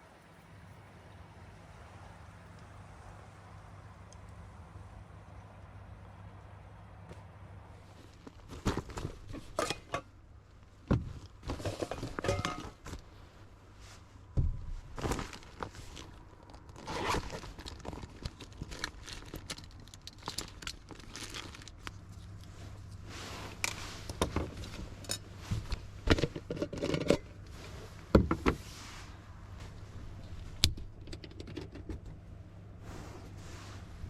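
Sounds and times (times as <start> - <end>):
crinkling and tearing: 14.8 - 24.8.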